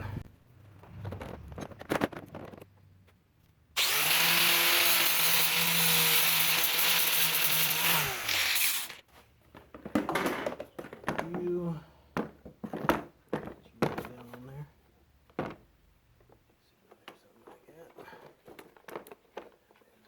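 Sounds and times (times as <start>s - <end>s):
angle grinder grinding metal: 3.8s - 9.0s.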